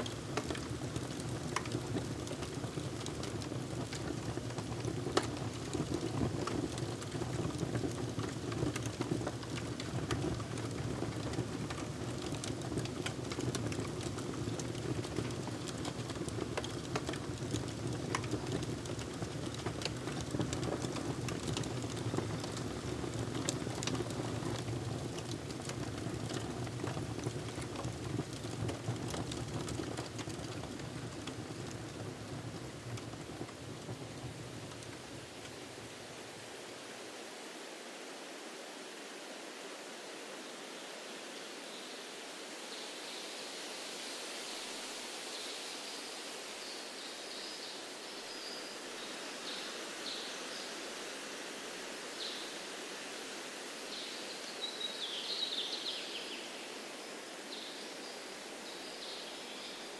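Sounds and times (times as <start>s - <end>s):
wood fire crackling: 0.0s - 36.7s.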